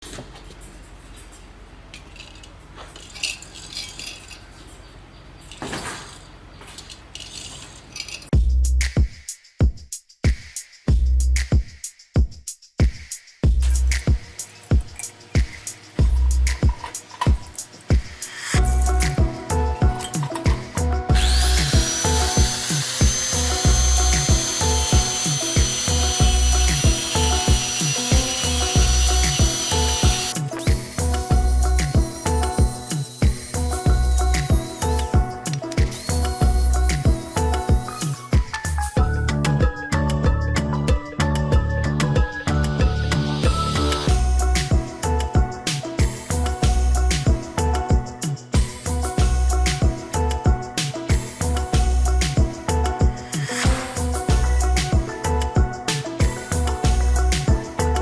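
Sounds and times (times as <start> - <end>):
light metallic clinks and rattles: 0.5 - 8.4
background music with steady beat: 8.3 - 58.0
power tool whining: 18.2 - 38.6
loud music with heavy beat: 41.0 - 58.0.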